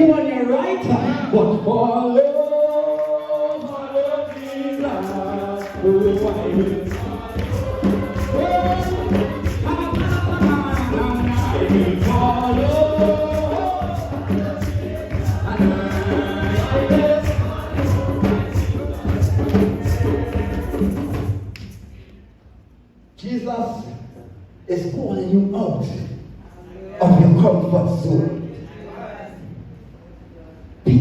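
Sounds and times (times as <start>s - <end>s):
group of voices singing: 0.0s - 21.5s
tambourine-like percussive beat: 2.3s - 22.0s.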